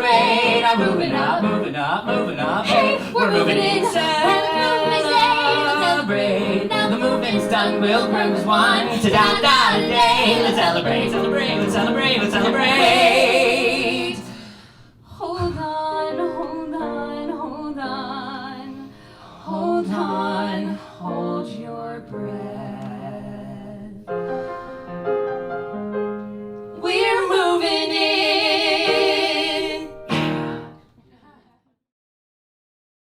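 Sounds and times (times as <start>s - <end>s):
singers holding notes: 0.0s - 14.7s, 26.8s - 30.8s
woman singing with vibrato: 2.6s - 14.4s, 15.1s - 18.8s.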